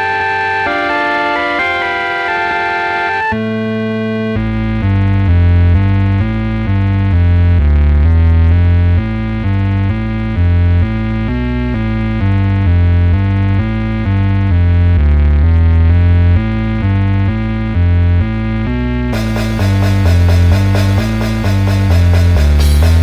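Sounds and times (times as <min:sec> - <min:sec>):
synth bass line: 0:00.0 - 0:23.0
sustained synth tones: 0:19.1 - 0:23.0.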